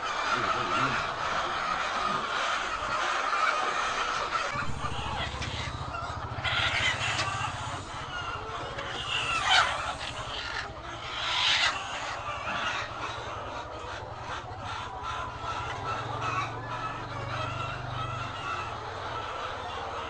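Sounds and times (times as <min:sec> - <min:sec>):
hens clucking and squawking: 0:00.0 - 0:20.0
steady low hum: 0:04.5 - 0:08.5.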